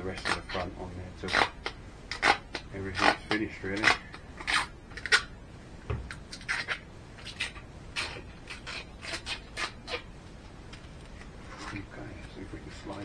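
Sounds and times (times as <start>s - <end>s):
acrylic sheet rubbing and scraping: 0.0s - 5.4s, 6.2s - 13.0s.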